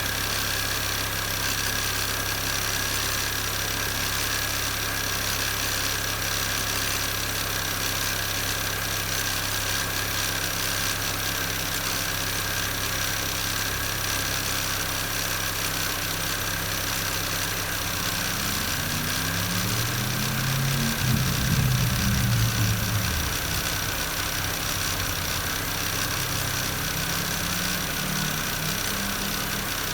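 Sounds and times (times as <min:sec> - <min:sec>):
car engine idling: 0:00.0 - 0:29.9
engine revving: 0:17.0 - 0:29.9
steady high tone: 0:18.0 - 0:28.8.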